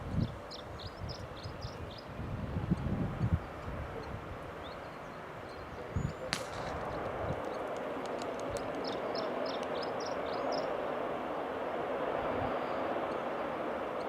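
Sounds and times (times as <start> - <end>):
sharp click: 6.4 - 8.8
jet engines roaring: 6.4 - 14.0.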